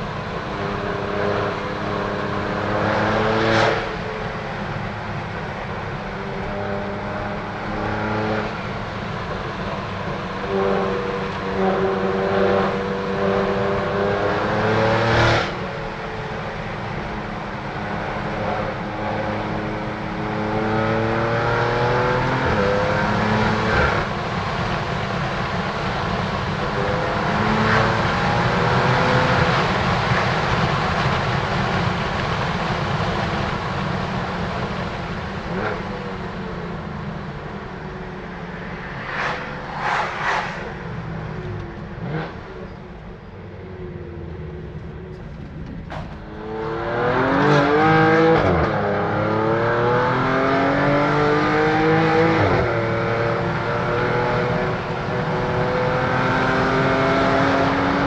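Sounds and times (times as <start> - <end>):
car engine revving hard: 46.4 - 58.0.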